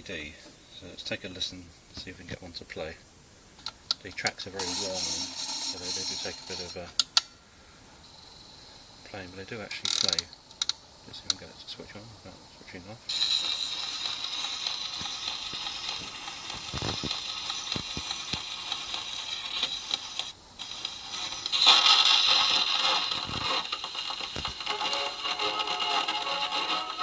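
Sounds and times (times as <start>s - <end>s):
record surface hiss and crackle: 0.0s - 27.0s
gramophone music: 21.2s - 27.0s.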